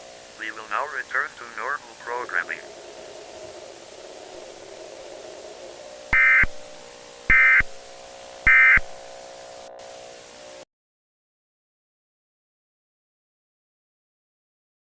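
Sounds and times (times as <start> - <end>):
steady low hum: 0.0 - 10.6
digital data tone bursts: 0.8 - 9.1.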